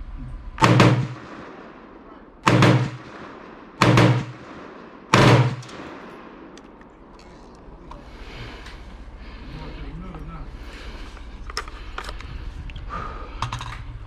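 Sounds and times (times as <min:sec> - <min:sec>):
gunshots with ringing tail: 0:00.6 - 0:07.1.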